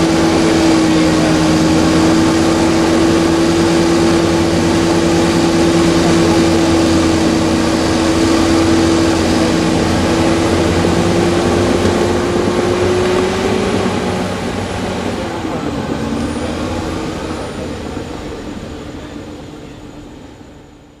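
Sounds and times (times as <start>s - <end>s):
diesel engine running with whine: 0.0s - 21.0s.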